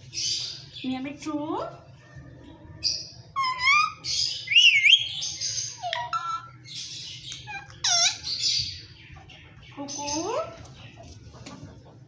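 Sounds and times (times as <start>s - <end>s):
parrot calling and chattering: 2.8s - 10.6s.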